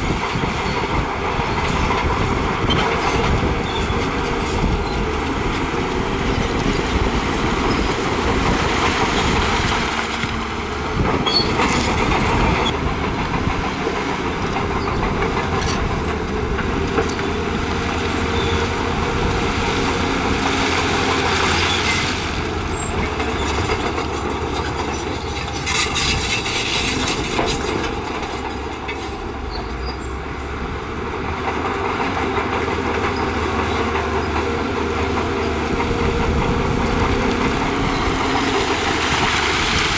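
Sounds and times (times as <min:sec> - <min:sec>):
diesel engine under load: 0:00.0 - 0:39.9
steel tracks clanking and squealing: 0:00.0 - 0:39.9
blade scraping rock and soil: 0:18.1 - 0:29.2.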